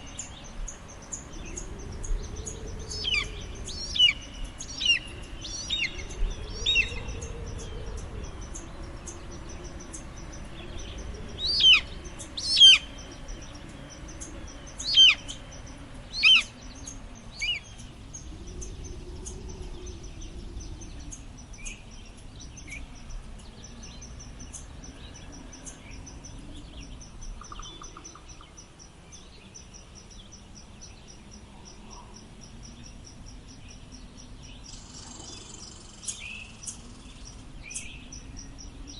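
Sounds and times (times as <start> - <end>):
gentle wind moaning: 0.0 - 38.9.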